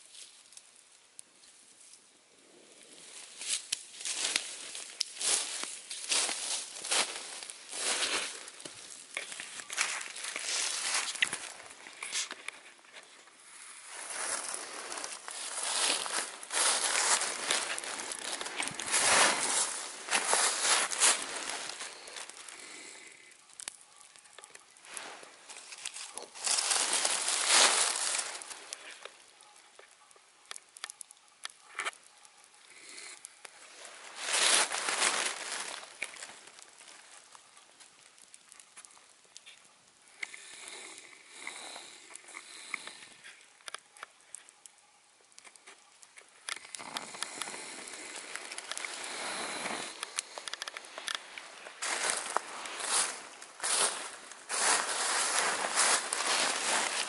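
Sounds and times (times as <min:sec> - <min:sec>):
campfire crackling and popping: 0:00.0 - 0:57.0
rustling noise: 0:03.0 - 0:22.4, 0:24.8 - 0:29.0, 0:33.7 - 0:36.9, 0:46.8 - 0:57.0
rushing hiss: 0:48.8 - 0:57.0.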